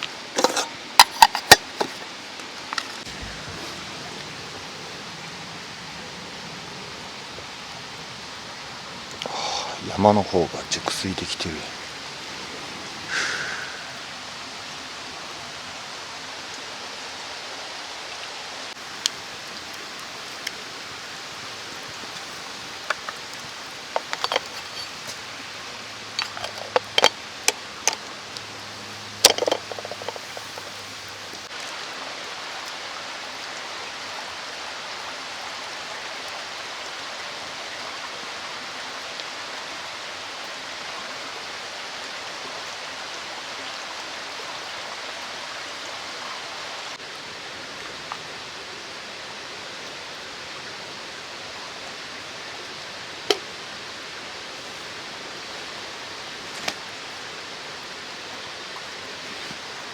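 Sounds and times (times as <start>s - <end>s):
mountain stream rushing: 0.0s - 59.9s
sharp clicks and knocks: 0.4s - 2.1s, 23.9s - 25.2s, 26.2s - 28.0s, 29.2s - 30.8s.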